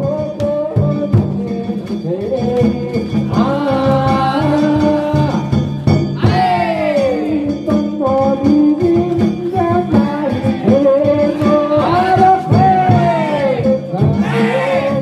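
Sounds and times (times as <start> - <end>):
drum strokes: 0.0 - 15.0
instrumental accompaniment: 0.0 - 15.0.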